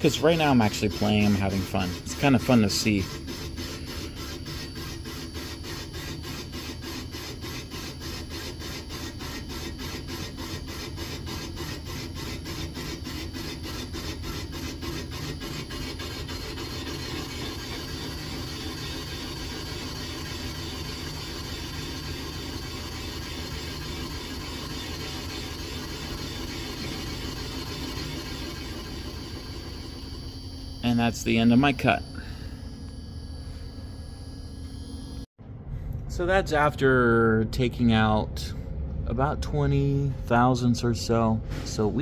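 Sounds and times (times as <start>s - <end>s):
boring cutter scraping metal: 0.0s - 32.0s
machine running hum: 0.0s - 42.0s.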